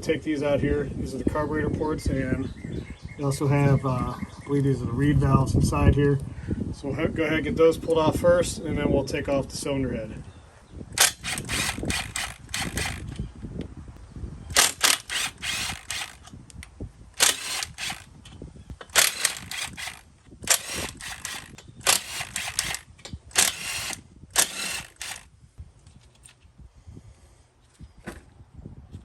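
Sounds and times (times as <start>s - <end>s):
hand ratchet clicking: 11.0s - 13.2s, 14.5s - 18.1s, 18.8s - 25.2s.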